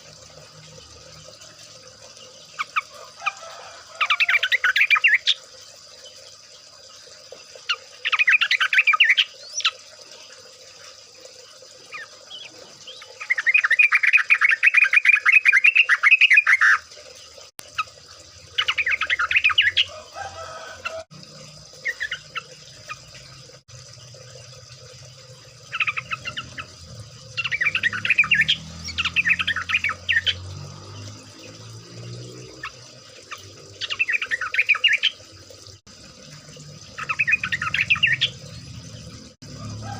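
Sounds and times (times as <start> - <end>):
bulbuls chattering song: 36.9 - 39.1.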